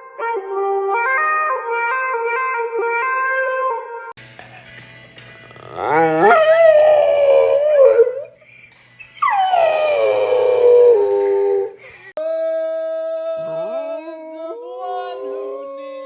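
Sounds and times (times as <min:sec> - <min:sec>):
dog howling: 0:05.5 - 0:08.3, 0:09.2 - 0:11.8.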